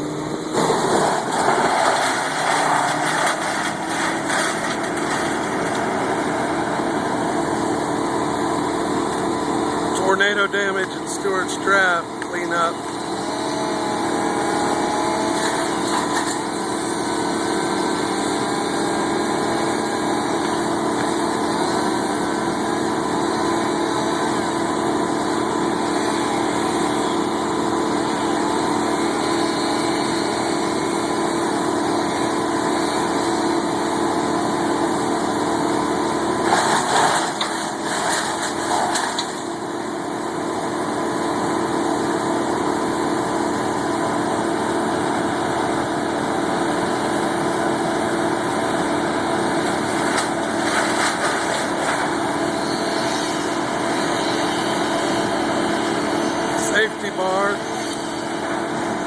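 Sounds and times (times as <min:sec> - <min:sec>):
brush chipper engine running: 0:00.0 - 0:59.0
wood knocking and cracking in chipper: 0:00.6 - 0:06.2, 0:15.0 - 0:16.7, 0:36.4 - 0:39.9, 0:49.5 - 0:52.4.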